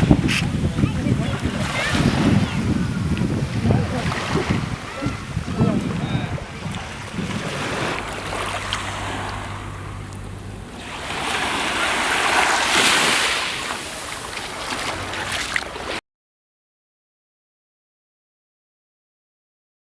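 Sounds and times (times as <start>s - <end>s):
wind buffeting microphone: 0.0s - 15.9s
sea waves washing in: 0.0s - 16.0s
low steady hum: 4.6s - 12.4s.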